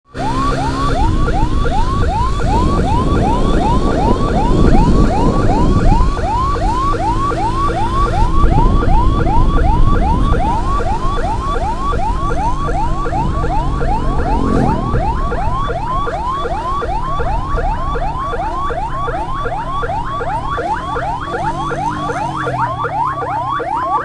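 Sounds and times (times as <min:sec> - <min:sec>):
electronic siren yelping: 0:00.1 - 0:24.0
low rumble: 0:12.1 - 0:20.2.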